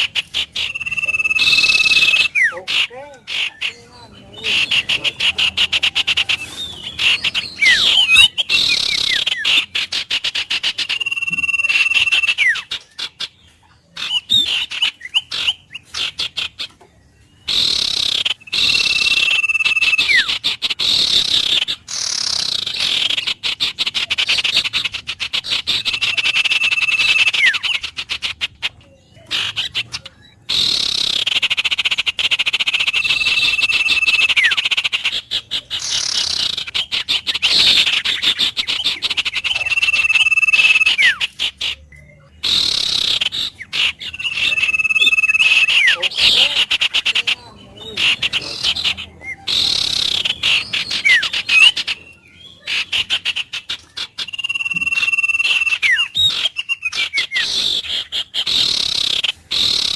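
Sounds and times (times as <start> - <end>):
birds chattering and trilling: 0.0 - 59.9
bird whistle with downward slide: 0.6 - 2.6, 10.8 - 12.7, 38.7 - 41.2, 44.1 - 46.0, 54.2 - 57.5.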